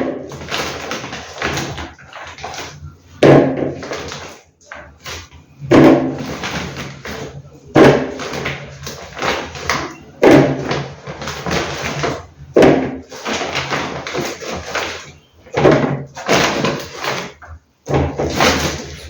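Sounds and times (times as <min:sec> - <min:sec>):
groceries thudding on surface: 0:00.0 - 0:19.0
bag rustling: 0:06.1 - 0:19.0.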